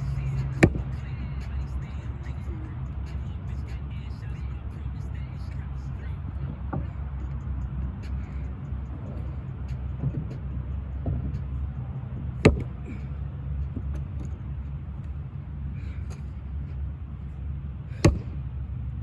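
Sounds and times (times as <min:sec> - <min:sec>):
steady low rumble: 0:00.0 - 0:19.0
axe striking wood: 0:00.6 - 0:01.0, 0:12.4 - 0:13.0, 0:18.0 - 0:18.4.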